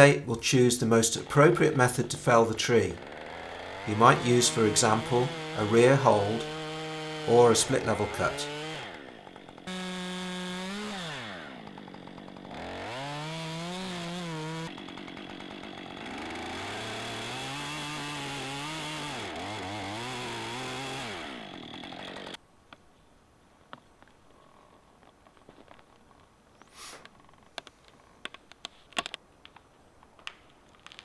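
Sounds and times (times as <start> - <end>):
chainsaw cutting tree trunk: 0.5 - 22.4.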